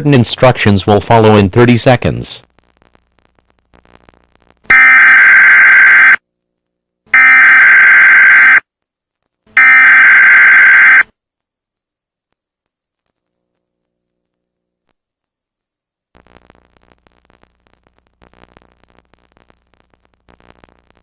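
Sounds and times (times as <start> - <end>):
loud electronic data bursts: 4.7 - 6.2, 7.2 - 8.6, 9.6 - 11.0.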